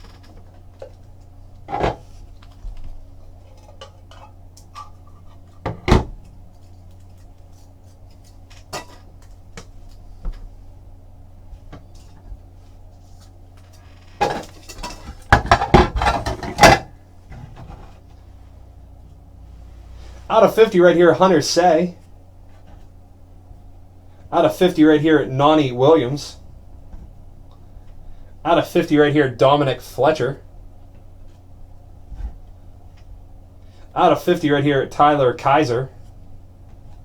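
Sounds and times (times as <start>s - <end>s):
clattering and rustling: 13.0s - 18.1s.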